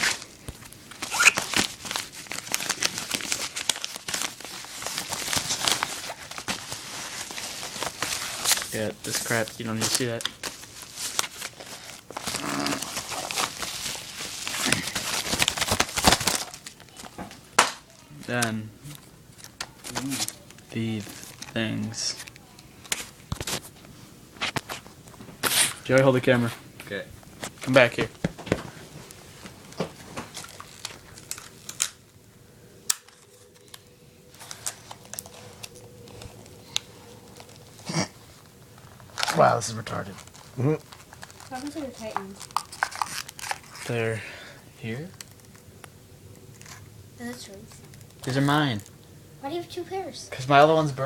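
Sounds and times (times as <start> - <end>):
packaging snapping: 0.0 - 21.6, 29.7 - 32.1, 32.9 - 38.0, 38.9 - 43.9
packaging crackling and rustling: 0.0 - 26.1, 27.2 - 44.0, 44.9 - 49.0.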